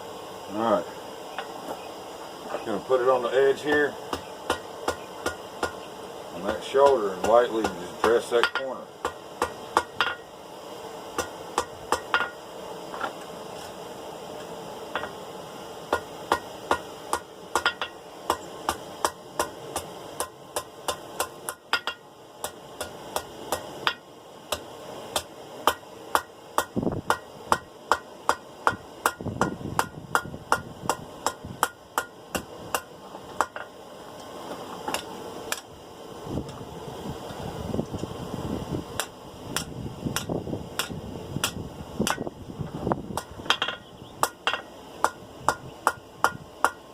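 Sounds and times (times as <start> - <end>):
hammer tapping metal on anvil: 6.5 - 10.3, 11.2 - 12.4, 15.9 - 24.6, 39.0 - 42.2, 43.2 - 46.8.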